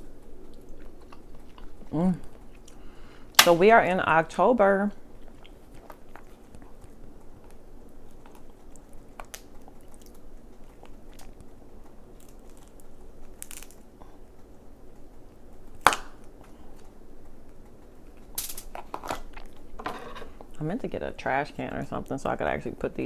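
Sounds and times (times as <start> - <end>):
close-up chewing: 0.0 - 20.7
crab shell cracking: 0.1 - 4.1, 5.0 - 20.6
sharp loud snap: 3.4 - 3.6.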